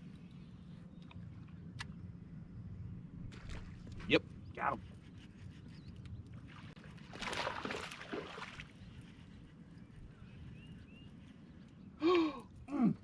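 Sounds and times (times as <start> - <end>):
fish splashing in water: 7.1 - 8.7.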